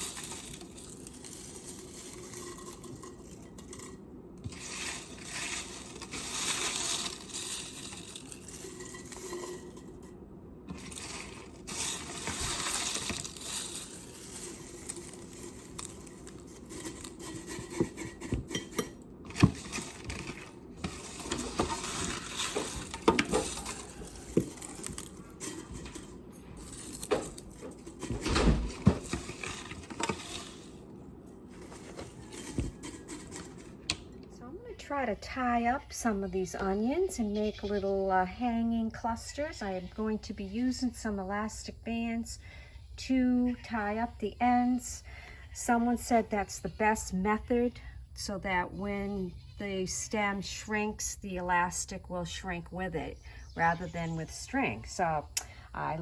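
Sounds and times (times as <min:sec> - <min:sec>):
dried leaves rustling and crackling: 0:00.0 - 0:10.1, 0:10.7 - 0:33.8
glass jars clinking: 0:00.0 - 0:10.1, 0:10.7 - 0:30.8, 0:31.5 - 0:33.8.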